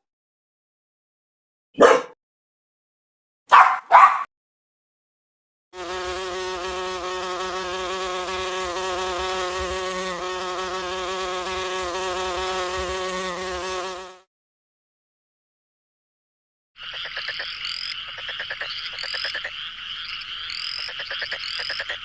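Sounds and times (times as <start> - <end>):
flying insect buzzing: 5.8 - 14.3.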